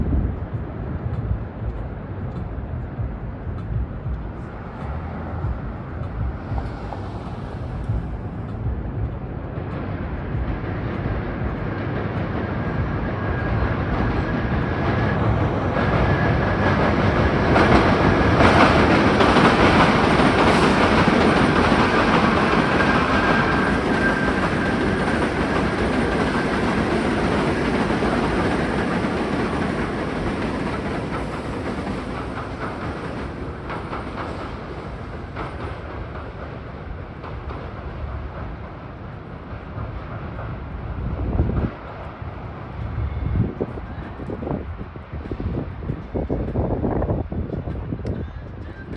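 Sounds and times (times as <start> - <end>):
train passing on rails: 0.0 - 48.9
high wheel squeal: 20.0 - 29.2.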